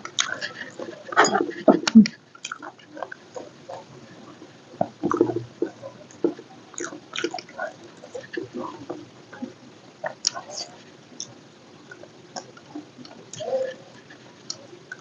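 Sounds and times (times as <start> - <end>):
close chewing of wet food: 0.1 - 10.4.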